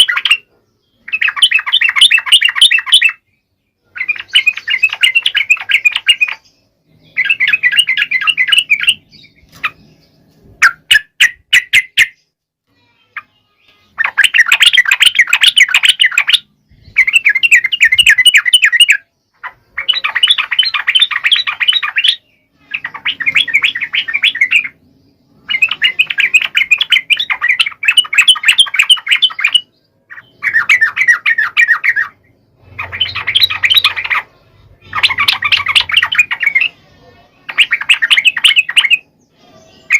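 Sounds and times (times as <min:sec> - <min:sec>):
sharp bird notes: 0:03.9 - 0:39.9
bulbul bubbly chattering song: 0:13.9 - 0:36.8, 0:37.4 - 0:39.2.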